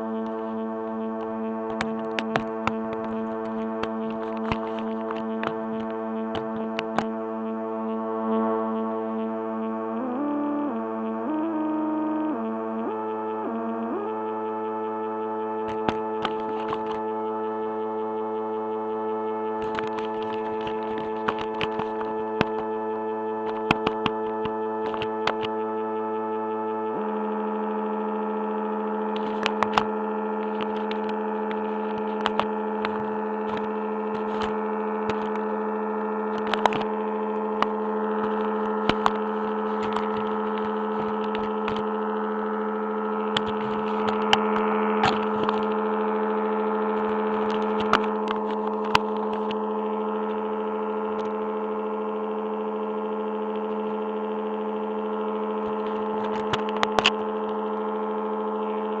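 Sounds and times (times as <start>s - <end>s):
ambient drone of steady tones: 0.0s - 59.0s
sharp clicks and crackles: 1.1s - 7.2s, 15.6s - 17.1s, 19.6s - 22.7s, 23.4s - 25.6s, 29.1s - 35.6s, 36.2s - 41.9s, 43.2s - 45.9s, 46.9s - 50.4s, 55.6s - 57.6s.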